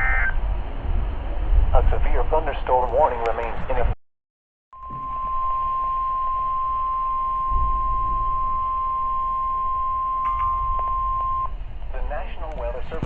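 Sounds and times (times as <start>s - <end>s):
steady high warning beep: 4.8s - 11.6s.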